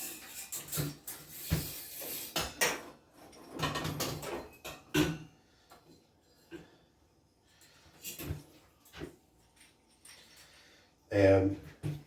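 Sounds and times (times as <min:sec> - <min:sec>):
shower fittings clinking: 0:00.0 - 0:06.7.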